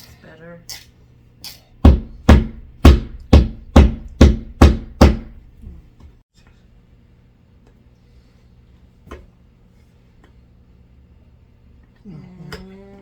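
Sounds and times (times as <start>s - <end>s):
hammer blows: 1.8s - 5.8s.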